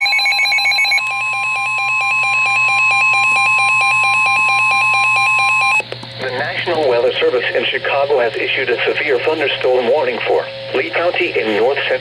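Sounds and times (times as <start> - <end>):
fast pulsing beeps: 0.0 - 5.8
steady alarm tone: 0.0 - 5.8.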